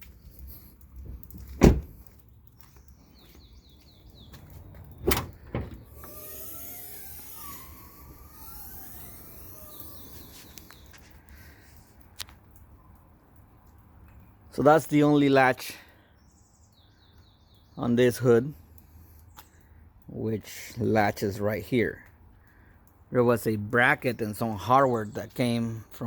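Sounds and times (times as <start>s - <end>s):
hood knocking shut: 1.4s - 2.0s, 5.0s - 9.6s
faint whines: 5.0s - 11.1s.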